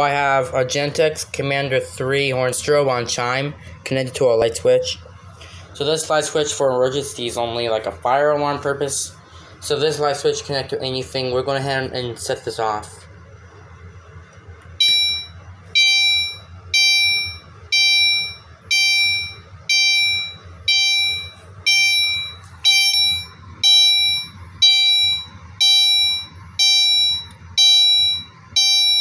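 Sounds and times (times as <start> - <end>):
fire alarm chime: 14.8 - 29.0.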